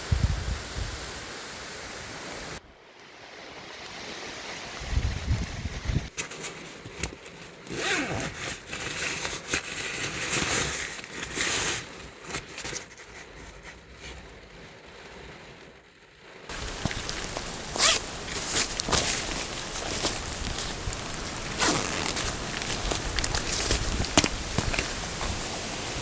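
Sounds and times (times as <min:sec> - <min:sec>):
zipper being pulled: 0:07.7 - 0:09.1, 0:16.5 - 0:26.0.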